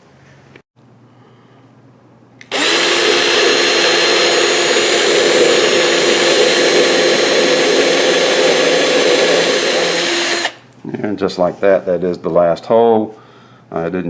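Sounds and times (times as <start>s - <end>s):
power drill drilling: 2.4s - 10.6s.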